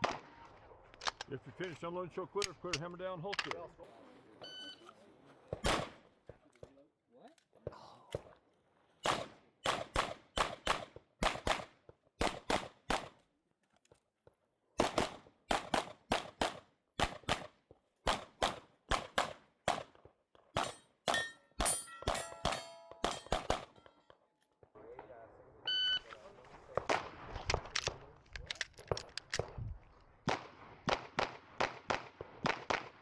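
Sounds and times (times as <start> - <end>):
pistol shots: 5.6 - 6.1, 9.0 - 13.2, 14.8 - 20.0, 20.6 - 23.9, 30.2 - 33.0
steel targets ringing: 20.6 - 23.9.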